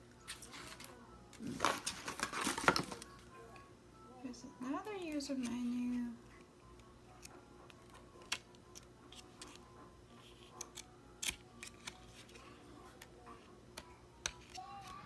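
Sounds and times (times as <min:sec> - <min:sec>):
papers being handled: 0:00.2 - 0:03.2.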